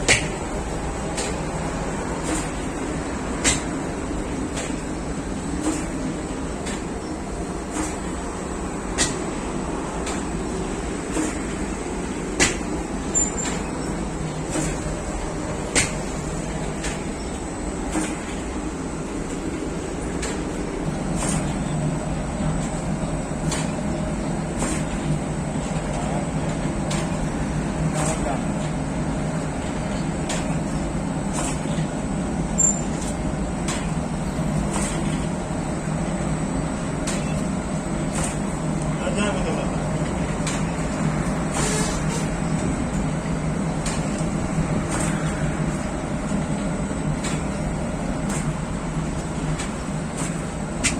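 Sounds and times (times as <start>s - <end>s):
sharp knocks and clacks: 0.0s - 0.5s, 8.9s - 9.3s, 12.4s - 13.8s, 15.7s - 16.2s, 48.2s - 50.9s
machinery humming: 0.0s - 50.9s.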